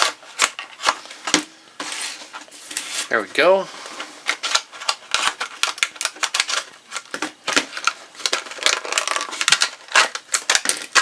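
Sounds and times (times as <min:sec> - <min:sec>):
plastic packaging crackling: 0:04.2 - 0:11.0.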